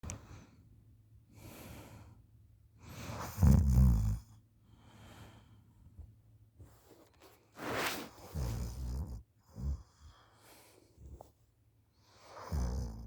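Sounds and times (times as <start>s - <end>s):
soft breathing: 0.0s - 3.3s, 4.6s - 8.8s, 9.7s - 12.5s.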